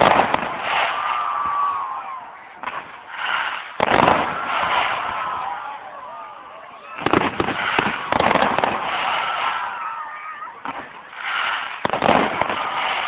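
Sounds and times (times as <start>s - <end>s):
firework crackling: 0.0s - 13.0s.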